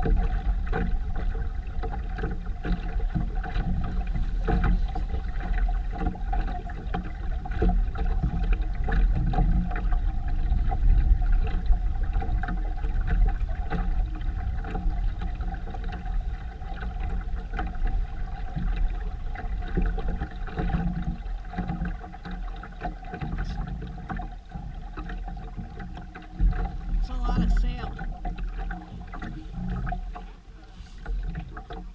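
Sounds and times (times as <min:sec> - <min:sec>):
water noise: 0:00.0 - 0:31.9
wind rumbling on microphone: 0:00.0 - 0:31.9
steady hum: 0:25.4 - 0:31.4.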